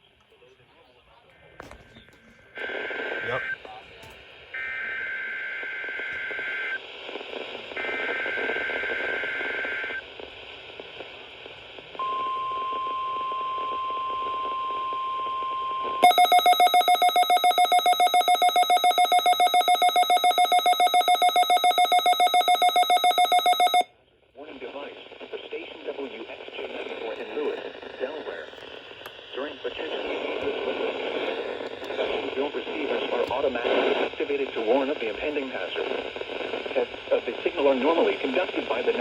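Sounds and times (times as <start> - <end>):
rapid electronic beeping alarm: 16.0 - 23.9
steady warning alarm tone: 16.0 - 23.9.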